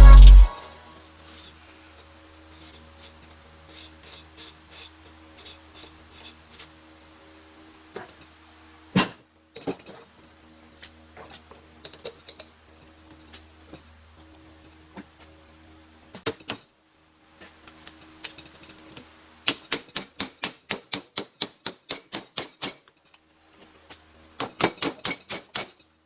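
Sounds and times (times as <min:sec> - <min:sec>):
low steady hum: 0:00.0 - 0:00.8.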